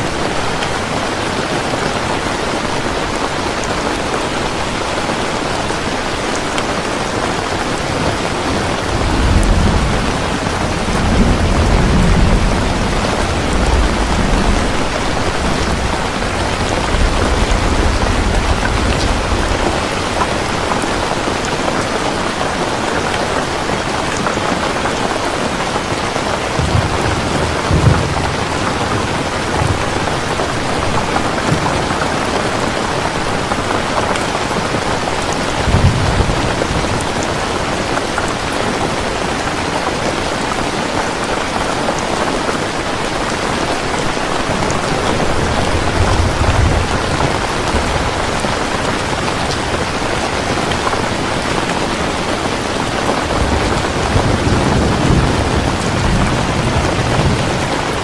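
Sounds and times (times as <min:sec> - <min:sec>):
heavy rain pouring: 0:00.0 - 0:58.0
low thunder rumbles: 0:07.4 - 0:21.6, 0:26.2 - 0:34.2, 0:34.8 - 0:37.9, 0:44.0 - 0:58.0.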